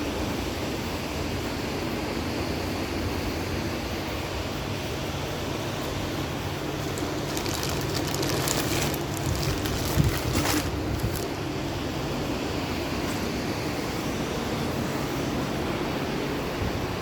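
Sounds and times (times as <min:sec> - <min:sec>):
engine humming: 0:04.7 - 0:17.0
crackly hissing: 0:05.6 - 0:15.2.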